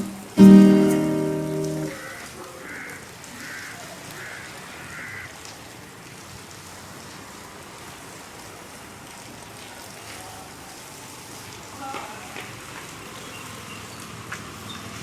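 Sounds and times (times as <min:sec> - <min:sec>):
background hiss: 0:00.0 - 0:02.0.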